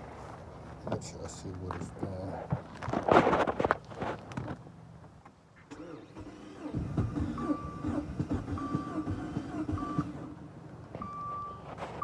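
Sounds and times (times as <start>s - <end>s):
car starter cranking engine: 5.7s - 10.4s
high warning chime beeping: 11.0s - 11.7s.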